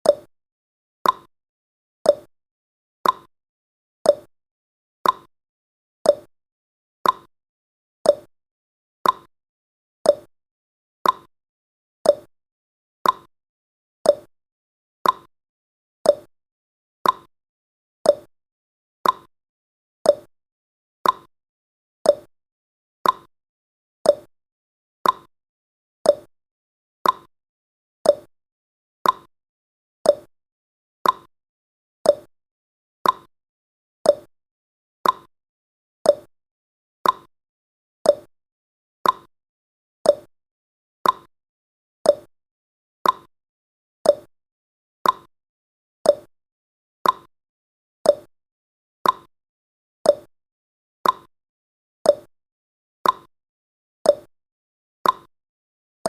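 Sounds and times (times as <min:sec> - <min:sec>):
clock ticking: 0:35.0 - 0:35.3, 0:39.0 - 0:39.3, 0:41.0 - 0:41.3, 0:47.0 - 0:47.3.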